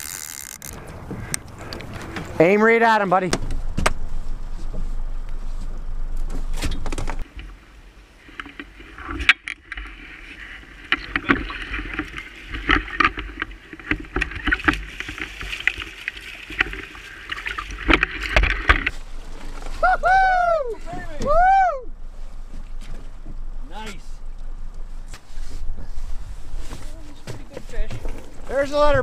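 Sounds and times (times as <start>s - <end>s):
wind and water rushing: 7.2s - 19.5s.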